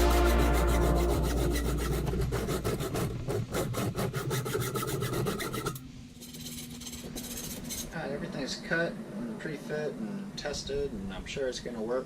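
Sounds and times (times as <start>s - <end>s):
hand tool rasping on metal: 0.0s - 7.9s.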